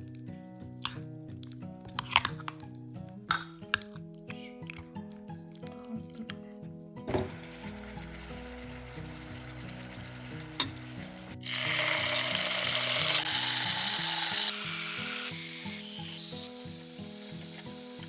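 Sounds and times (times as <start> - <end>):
background music: 0.0 - 18.0
food sizzling in hot oil: 7.1 - 18.0.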